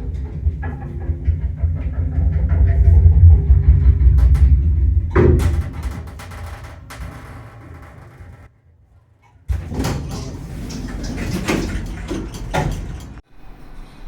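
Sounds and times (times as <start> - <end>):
knocks: 0.0 - 8.5
lift doors sliding: 0.0 - 8.5, 9.5 - 13.2.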